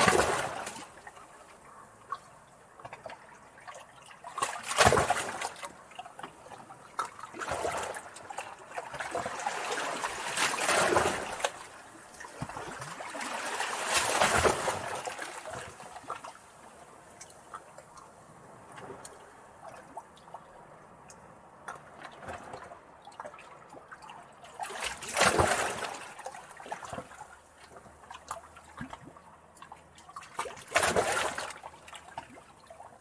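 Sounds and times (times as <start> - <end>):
sea waves washing in: 9.1 - 16.1.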